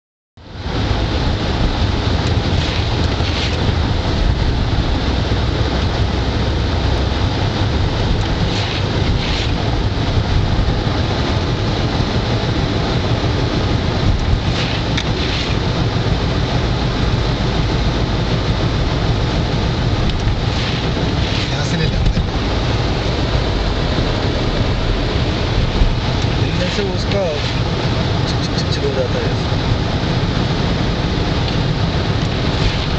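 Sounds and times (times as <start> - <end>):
car tyres and engine rumbling: 0.4 - 32.9
brief swishes: 8.4 - 9.6, 14.5 - 15.6, 20.5 - 21.6, 27.4 - 27.6, 32.5 - 32.9.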